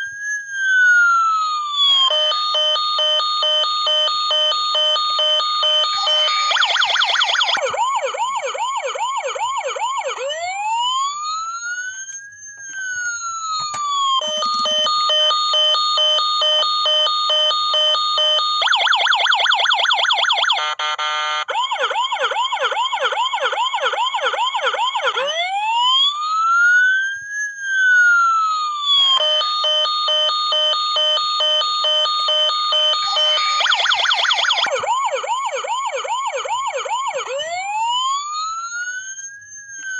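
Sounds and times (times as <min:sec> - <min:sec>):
toy siren pulsed beeping: 0:00.0 - 0:39.9
toy siren rising and falling wail: 0:00.0 - 0:39.9
toy siren warbling yelp: 0:00.6 - 0:27.0, 0:27.7 - 0:39.9
rapid electronic chirps: 0:03.9 - 0:08.1, 0:18.2 - 0:20.7, 0:29.2 - 0:36.1.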